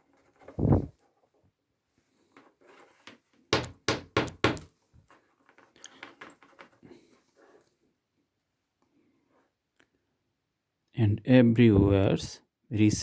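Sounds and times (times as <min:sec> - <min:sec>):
sharp knocks on work surface: 0:03.6 - 0:04.7
clicks and rustles of handling: 0:05.0 - 0:07.8.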